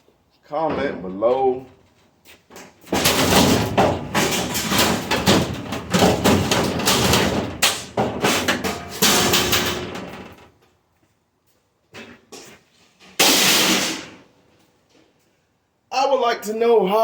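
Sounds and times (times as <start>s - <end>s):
metal parts banging and clattering: 2.8s - 10.5s, 13.0s - 14.2s.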